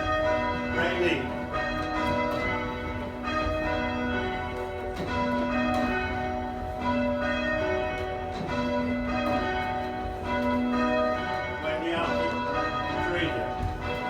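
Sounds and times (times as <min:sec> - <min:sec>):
church bells ringing: 0:00.0 - 0:14.0.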